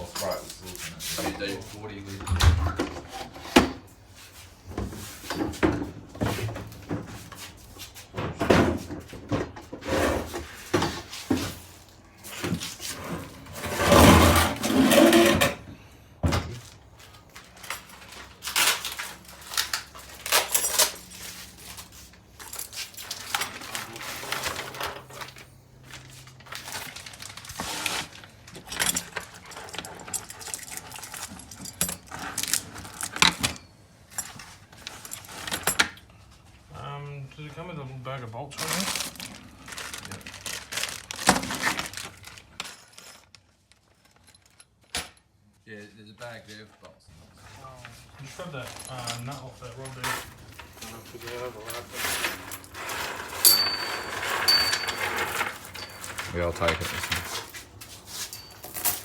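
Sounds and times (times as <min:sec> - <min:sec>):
metal parts clinking and clunking: 0:13.5 - 0:15.6, 0:17.4 - 0:25.6, 0:26.3 - 0:36.1, 0:41.2 - 0:43.4, 0:48.6 - 0:59.0.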